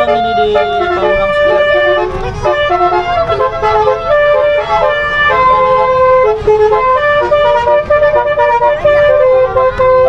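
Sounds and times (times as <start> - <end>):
multi-tone bus horn melody: 0.0 - 10.0.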